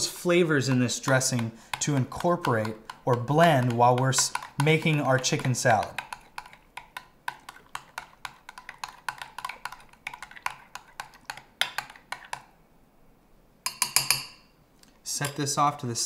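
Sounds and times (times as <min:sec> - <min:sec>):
utensil clicking against bowl: 0:00.6 - 0:12.5.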